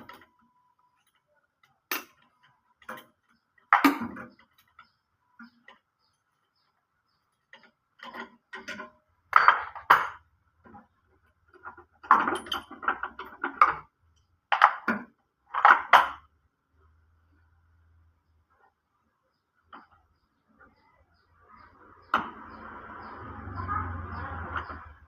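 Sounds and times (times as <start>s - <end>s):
metal tools clinking and knocking: 7.4s - 10.9s, 11.5s - 16.2s.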